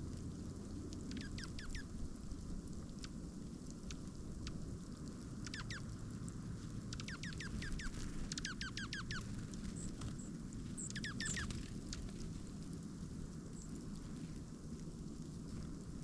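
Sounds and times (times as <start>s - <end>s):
low outdoor rumble: 0.0s - 16.0s
songbird whistling falling notes: 10.8s - 11.5s.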